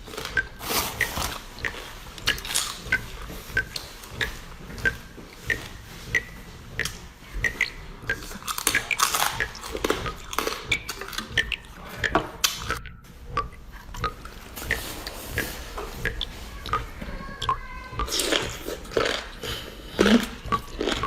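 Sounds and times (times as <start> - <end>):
person biting and chewing: 0.1 - 3.7, 7.5 - 12.8, 18.0 - 21.0
crunches and clicks: 0.1 - 18.2.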